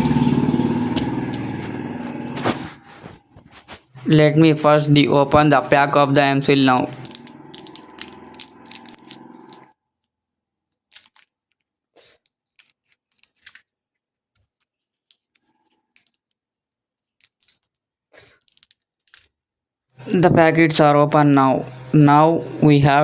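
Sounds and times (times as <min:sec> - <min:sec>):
packaging clicks and rustles: 0:10.8 - 0:13.8.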